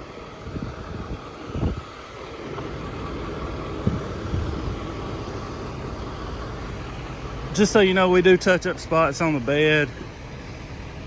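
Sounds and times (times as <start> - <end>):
diesel engine idling: 0.0 - 11.0
dull low thumps: 3.6 - 5.0.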